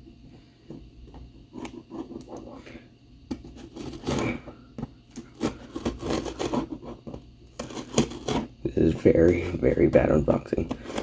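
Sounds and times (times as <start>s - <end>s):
hands rubbing cardboard box: 5.2s - 9.2s.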